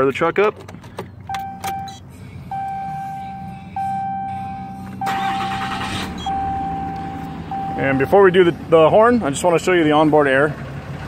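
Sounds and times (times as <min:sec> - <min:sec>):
truck engine running: 0:00.7 - 0:11.0
vehicle warning chime: 0:01.2 - 0:09.2
engine starting: 0:05.0 - 0:06.4.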